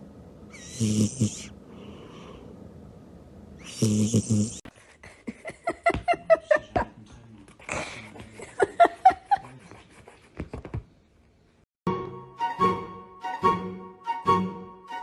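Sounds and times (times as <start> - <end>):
music: 11.9 - 15.0.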